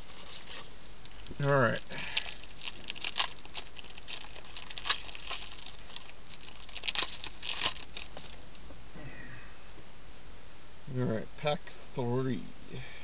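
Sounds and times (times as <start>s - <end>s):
wrapper crinkling and rustling: 0.0s - 8.4s.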